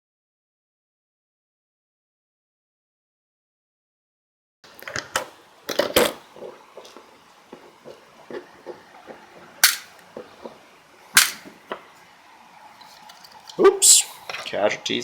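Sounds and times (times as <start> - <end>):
plastic casing snapping: 9.6 - 10.0, 11.2 - 11.5.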